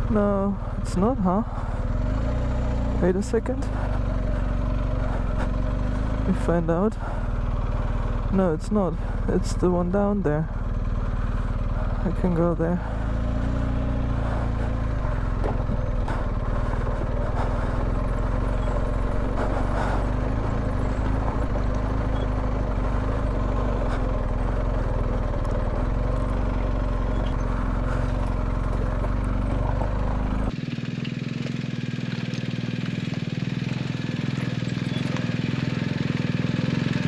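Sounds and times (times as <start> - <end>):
motorcycle engine running: 0.0 - 37.0.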